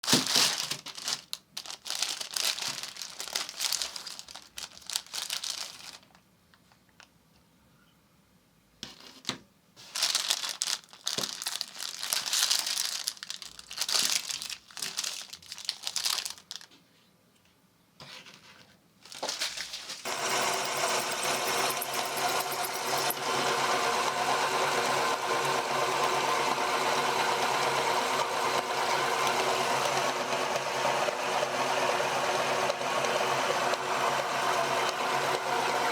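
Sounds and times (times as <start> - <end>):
crinkling and crunching: 0.0 - 7.1, 9.8 - 16.9, 18.2 - 20.1
meat grinder motor humming: 20.0 - 35.9.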